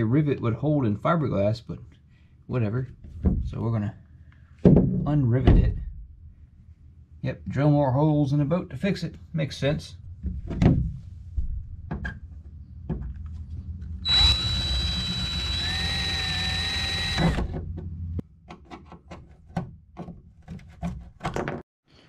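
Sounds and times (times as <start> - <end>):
power drill whining: 14.0 - 17.6.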